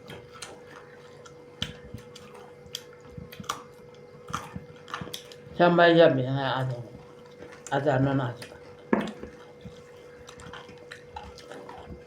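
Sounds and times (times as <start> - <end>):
person chewing food: 0.0 - 5.7, 6.6 - 12.0
faint steady hum: 0.0 - 12.0
wet mouth clicks and smacks: 1.2 - 5.4.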